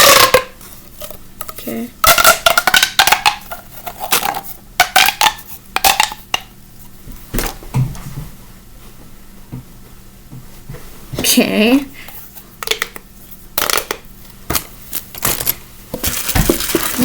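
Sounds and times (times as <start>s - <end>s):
plastic pop tubes clicking: 0.0s - 6.5s.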